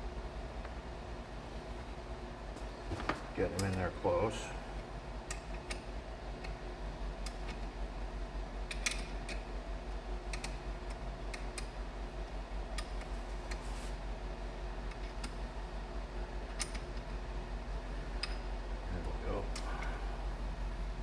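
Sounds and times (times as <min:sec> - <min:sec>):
steady low hum: 0:00.0 - 0:21.0
wrench clicking on bolts: 0:10.3 - 0:11.7.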